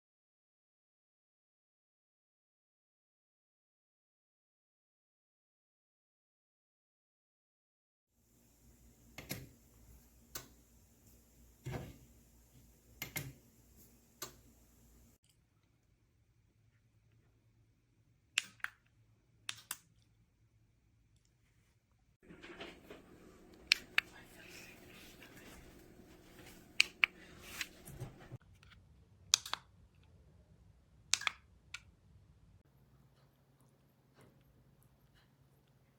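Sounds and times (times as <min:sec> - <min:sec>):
outlet switch clicking: 0:13.0 - 0:13.4, 0:22.4 - 0:24.1, 0:25.8 - 0:28.3
low steady hum: 0:22.2 - 0:28.4.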